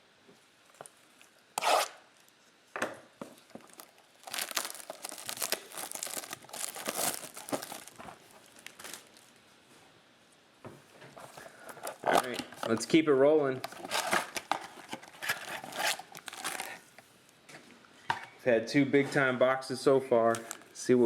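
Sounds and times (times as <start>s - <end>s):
plastic wrap crinkling and tearing: 3.5s - 9.4s, 11.8s - 12.9s, 13.6s - 16.9s, 20.3s - 20.7s
packaging ripping: 3.7s - 9.3s, 11.8s - 12.8s, 13.7s - 16.8s, 20.3s - 20.7s.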